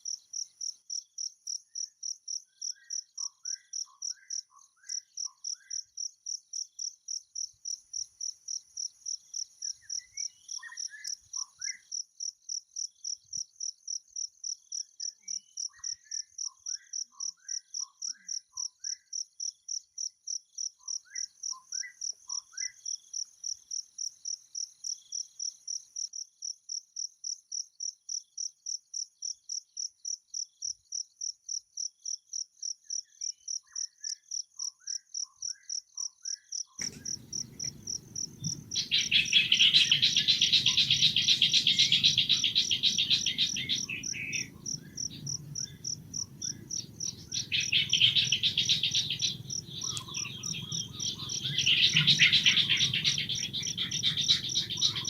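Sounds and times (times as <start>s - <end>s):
cricket chirping: 0.0s - 55.0s
bird singing: 34.8s - 55.0s.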